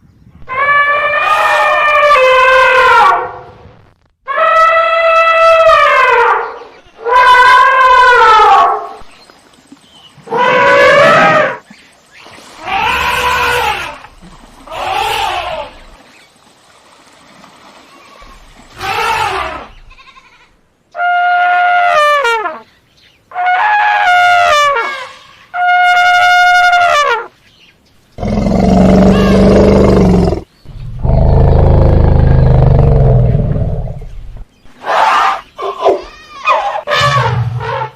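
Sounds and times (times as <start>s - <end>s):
elephant trumpeting: 12.6s - 14.0s, 23.3s - 27.2s, 28.2s - 33.4s, 34.8s - 37.9s.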